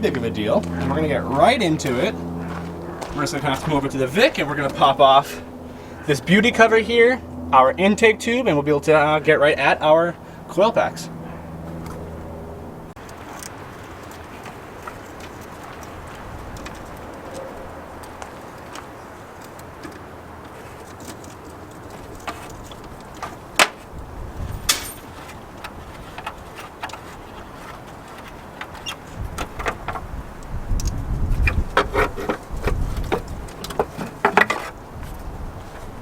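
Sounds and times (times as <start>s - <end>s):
knocking and handling noise: 31.5s - 34.8s.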